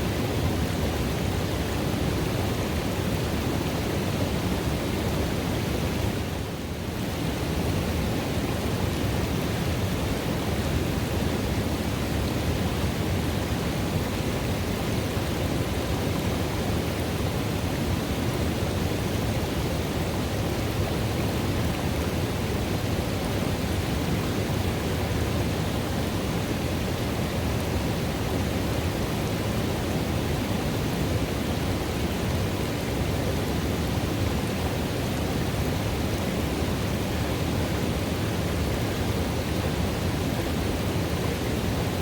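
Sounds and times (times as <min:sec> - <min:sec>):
river water rushing into pool: 0:00.0 - 0:42.0.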